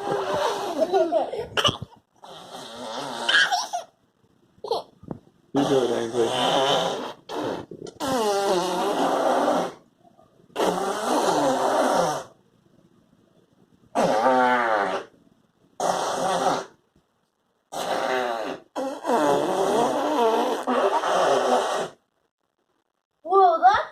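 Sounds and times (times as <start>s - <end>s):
drawn-out fart noises: 0.0s - 1.0s, 1.6s - 3.8s, 5.6s - 9.9s, 10.5s - 12.4s, 13.9s - 15.2s, 15.8s - 16.8s, 17.7s - 22.1s.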